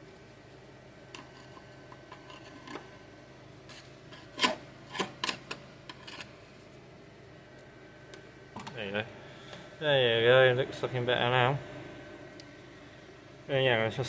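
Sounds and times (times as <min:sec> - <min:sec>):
scraping on metal: 0:01.1 - 0:02.9, 0:03.6 - 0:06.4.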